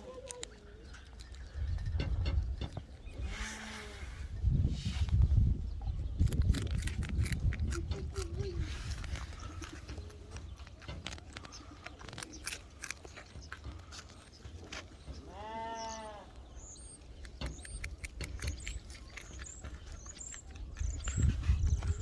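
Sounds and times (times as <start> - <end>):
animal crunching a carrot: 0.0 - 4.0, 6.0 - 15.2, 16.3 - 22.0
bleat-like animal call: 15.2 - 16.3.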